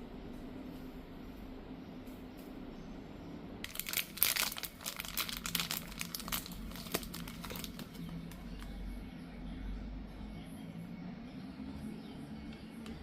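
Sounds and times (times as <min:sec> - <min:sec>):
faint low hum: 0:00.0 - 0:13.0
packaging crinkling: 0:03.6 - 0:08.7.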